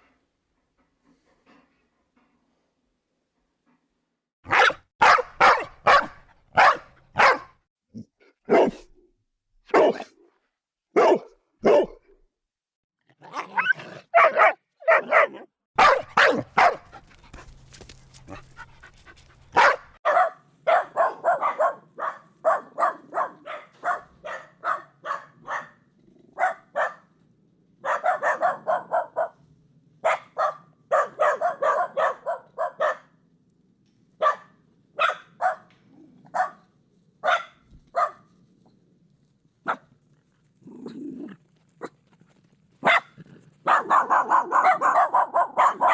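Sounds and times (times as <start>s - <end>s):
dog barking: 4.5s - 7.6s, 8.5s - 8.9s, 9.7s - 10.1s, 11.0s - 12.0s, 13.4s - 17.5s, 19.5s - 25.8s, 26.4s - 27.1s, 27.8s - 29.4s, 30.0s - 33.2s, 34.2s - 36.6s, 37.2s - 38.3s, 39.6s - 39.9s, 42.8s - 45.9s.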